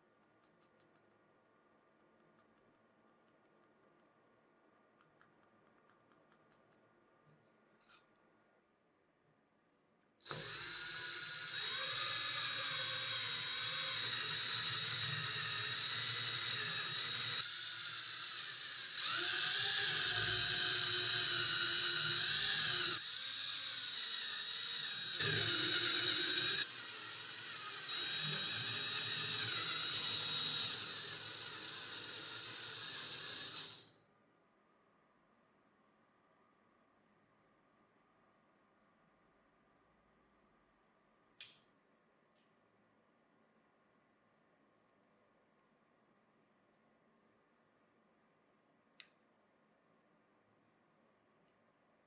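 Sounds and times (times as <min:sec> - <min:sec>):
angle grinder whining: 0:10.3 - 0:33.8.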